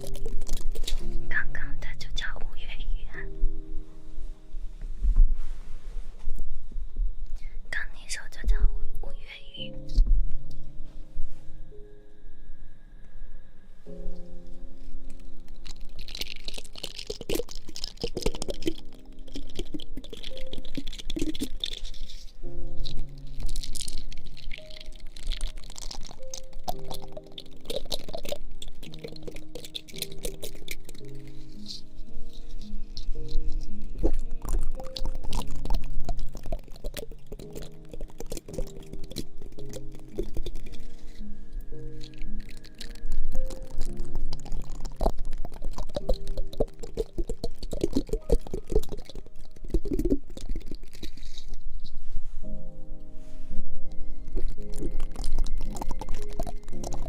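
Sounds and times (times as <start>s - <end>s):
quiet background music: 0.0s - 57.0s
soft rustling: 3.5s - 7.3s, 51.1s - 54.4s.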